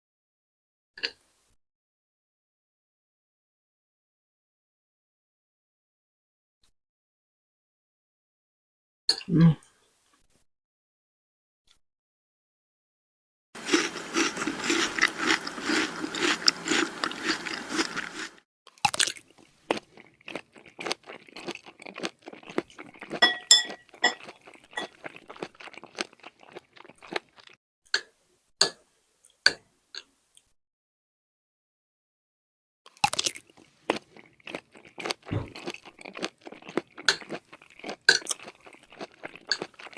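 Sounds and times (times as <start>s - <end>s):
crunchy chewing: 13.6s - 27.6s, 32.9s - 39.9s
wet mouth clicks: 35.3s - 35.9s.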